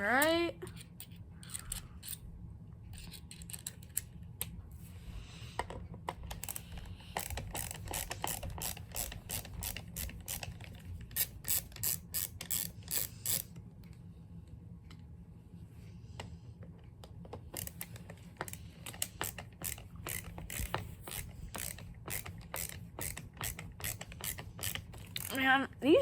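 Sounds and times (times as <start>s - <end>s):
screwdriver clicking on screws: 6.3s - 13.5s, 17.5s - 25.4s.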